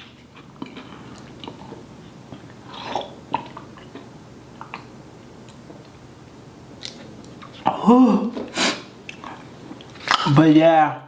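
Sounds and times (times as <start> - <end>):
person chewing food: 0.0 - 10.3
breathy burst: 7.9 - 8.9.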